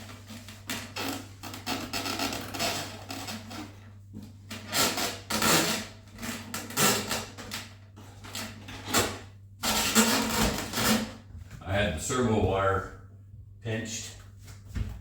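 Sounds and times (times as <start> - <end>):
foam squeaking and rubbing: 0.0 - 3.8, 4.5 - 7.4, 8.8 - 11.2.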